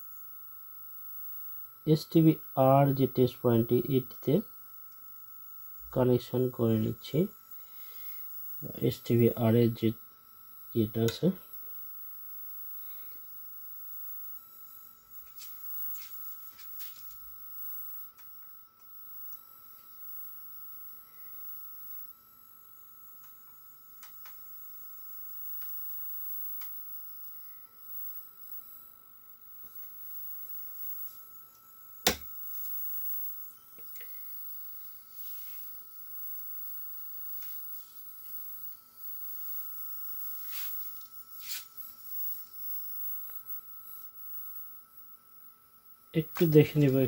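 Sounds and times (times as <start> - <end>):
faint electrical whine and hum: 0.0 - 47.0
sharp click: 32.1 - 32.3.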